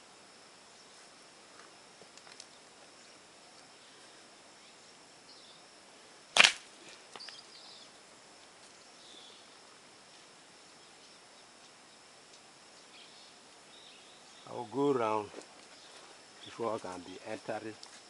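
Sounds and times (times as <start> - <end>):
slingshot snap: 6.4 - 7.3.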